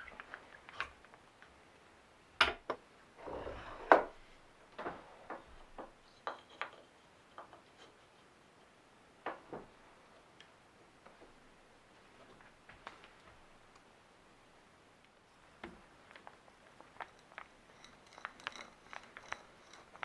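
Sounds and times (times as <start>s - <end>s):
scraping: 3.2s - 5.1s.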